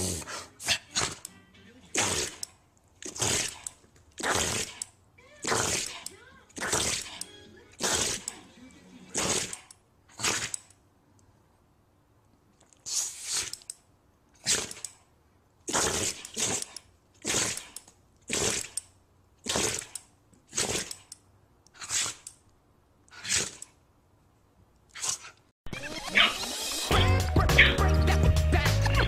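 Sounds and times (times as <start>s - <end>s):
dog sneezing: 9.2s - 10.5s, 21.8s - 22.2s.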